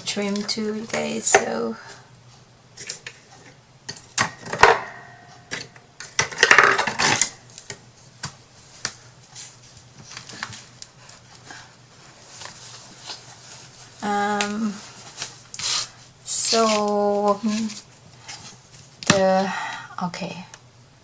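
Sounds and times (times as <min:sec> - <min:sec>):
rustling scrape: 0:08.6 - 0:18.9.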